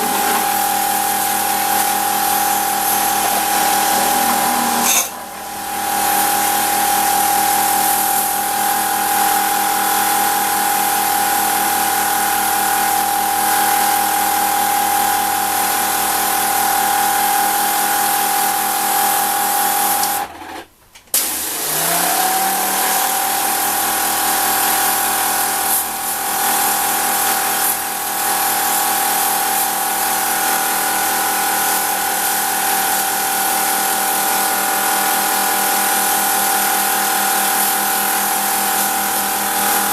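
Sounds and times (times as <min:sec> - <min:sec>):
water spraying hiss: 0:00.0 - 0:04.8
pressure washer pump whine: 0:00.0 - 0:20.5, 0:21.2 - 0:39.9.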